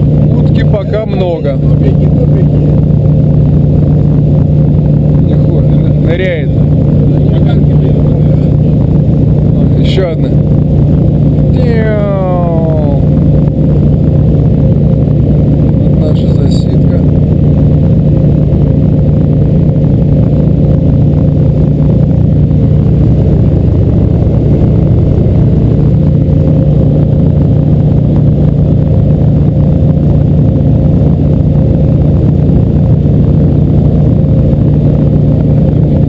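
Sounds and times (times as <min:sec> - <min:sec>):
outboard motor droning: 0:00.0 - 0:36.0.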